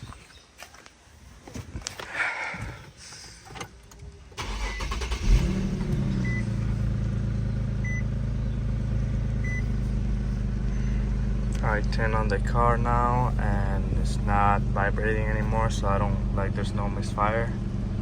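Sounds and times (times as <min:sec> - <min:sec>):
car engine starting and idling: 0:03.5 - 0:18.0
short beeps: 0:07.8 - 0:08.1, 0:09.4 - 0:09.7.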